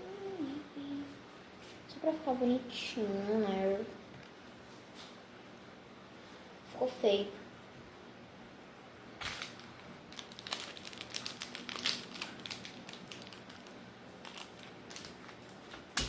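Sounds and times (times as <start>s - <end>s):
slime crackling in hands: 9.2s - 16.0s.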